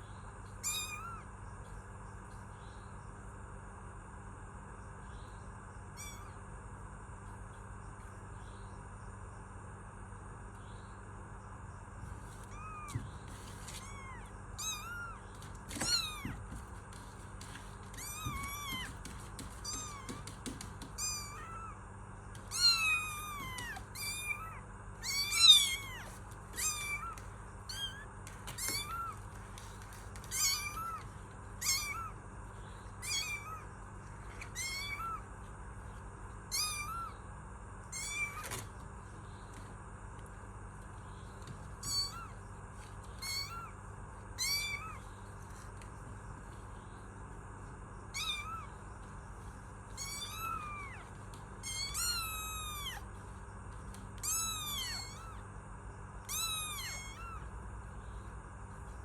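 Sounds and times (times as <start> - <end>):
kitten meowing: 0.6 - 1.3, 6.0 - 6.4, 12.4 - 16.4, 17.9 - 21.8, 22.4 - 32.2, 33.0 - 35.3, 36.5 - 37.2, 37.9 - 38.7, 41.8 - 42.4, 43.0 - 43.8, 44.4 - 45.1, 48.1 - 48.8, 49.9 - 53.1, 54.2 - 55.4, 56.2 - 57.5.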